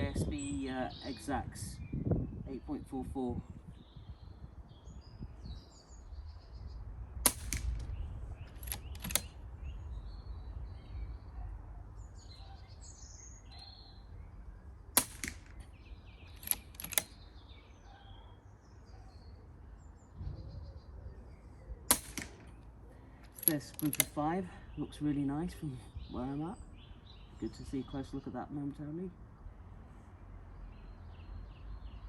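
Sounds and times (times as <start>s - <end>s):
low wind rumble on microphone: 0.0s - 14.9s, 19.9s - 21.9s
silenced air rifle shot: 7.1s - 9.4s, 14.9s - 17.2s, 21.8s - 22.7s
light clicks: 8.5s - 9.4s, 16.3s - 17.2s, 23.2s - 24.2s.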